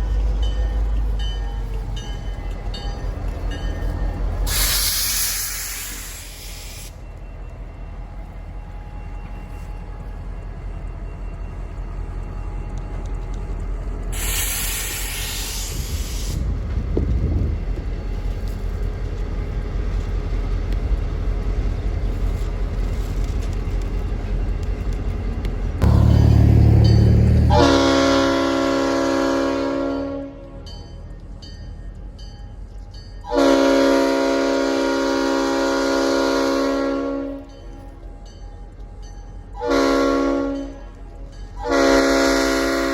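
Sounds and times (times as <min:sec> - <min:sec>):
diesel locomotive engine rumble: 0:00.0 - 0:42.9
air hiss: 0:04.5 - 0:07.0, 0:14.1 - 0:16.5
locomotive horn blasts: 0:25.8 - 0:30.6, 0:33.3 - 0:37.5, 0:39.6 - 0:40.8, 0:41.6 - 0:42.9.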